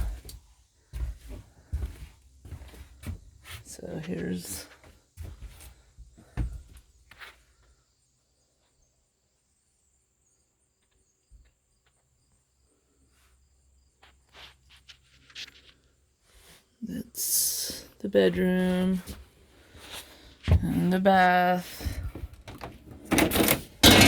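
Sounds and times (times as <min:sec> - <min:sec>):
footsteps and knocks on floor: 0:00.0 - 0:03.7, 0:04.8 - 0:07.3, 0:20.4 - 0:20.9.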